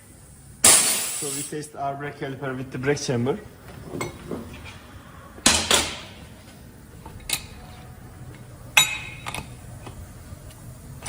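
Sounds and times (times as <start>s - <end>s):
air brake burst: 0.6s - 1.5s
metallic clank with ringing: 8.8s - 9.5s.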